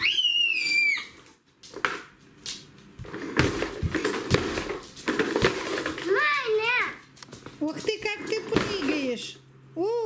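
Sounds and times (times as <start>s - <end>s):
child squealing: 0.0s - 1.2s.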